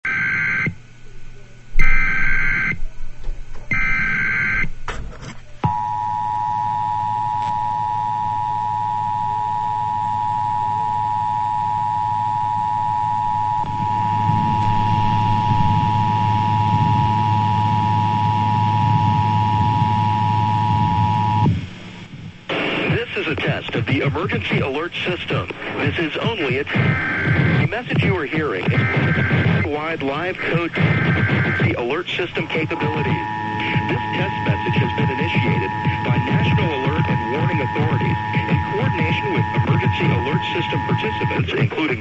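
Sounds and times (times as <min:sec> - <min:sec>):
low hum: 0:00.8 - 0:22.7, 0:26.7 - 0:41.4
two-tone attention signal: 0:05.6 - 0:21.5, 0:32.6 - 0:41.4
warbling data bursts: 0:05.9 - 0:21.5, 0:24.8 - 0:42.0.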